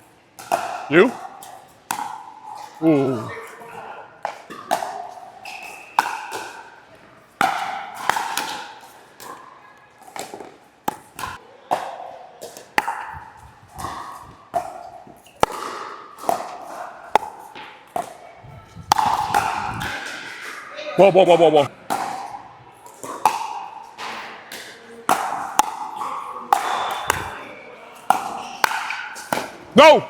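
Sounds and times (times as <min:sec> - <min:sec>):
ball bouncing on court: 0:10.2 - 0:16.5, 0:17.2 - 0:20.2, 0:26.6 - 0:27.4
paddles striking plastic ball: 0:18.8 - 0:20.2, 0:26.5 - 0:27.3.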